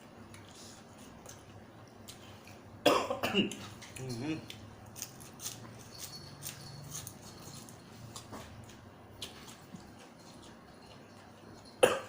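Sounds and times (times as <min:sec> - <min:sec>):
person chewing food: 0:00.0 - 0:02.8, 0:03.5 - 0:11.8.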